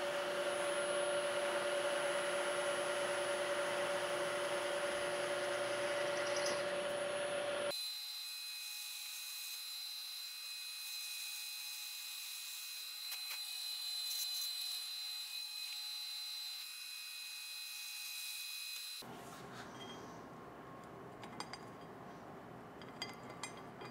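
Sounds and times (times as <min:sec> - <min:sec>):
milling machine high-pitched whine: 0:00.0 - 0:08.1.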